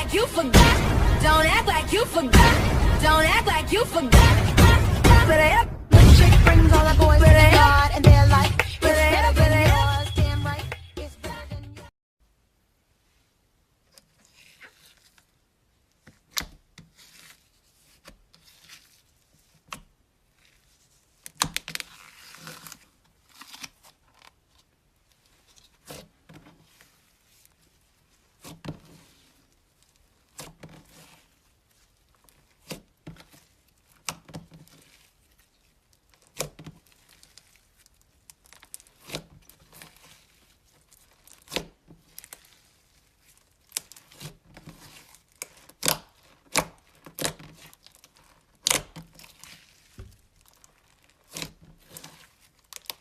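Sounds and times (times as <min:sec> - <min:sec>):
slime squelching and crackling: 0:13.8 - 0:53.0.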